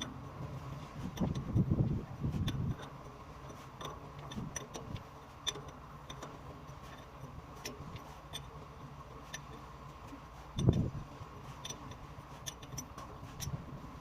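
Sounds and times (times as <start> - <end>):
steady low hum: 0.0 - 14.0
small clicks and light taps: 9.1 - 10.9.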